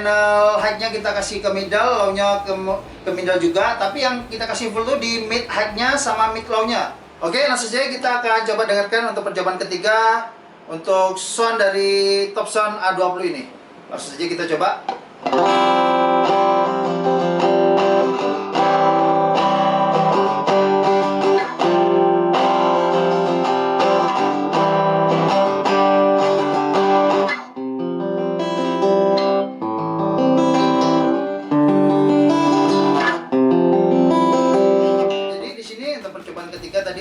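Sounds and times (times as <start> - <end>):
acoustic guitar strumming: 0.0 - 7.3, 15.3 - 37.0.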